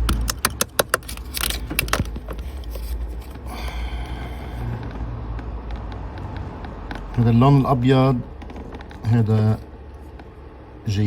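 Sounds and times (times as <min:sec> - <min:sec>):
wiring harness clicks and rattles: 0:00.0 - 0:03.4.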